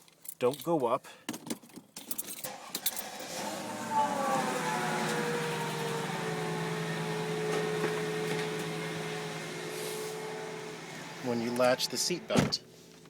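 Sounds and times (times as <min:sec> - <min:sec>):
air pump humming: 0:03.8 - 0:12.4.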